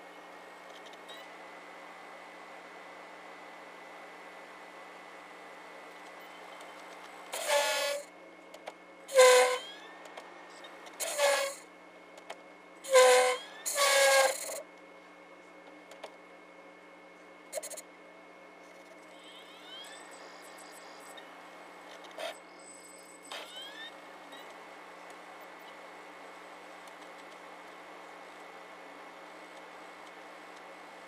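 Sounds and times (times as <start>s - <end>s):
short pitched buzzing tone: 9.1s - 9.8s, 12.9s - 14.6s.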